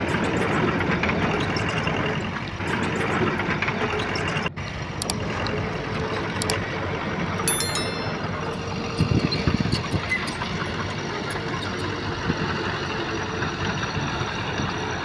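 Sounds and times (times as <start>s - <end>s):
diesel machinery running: 8.2s - 15.0s.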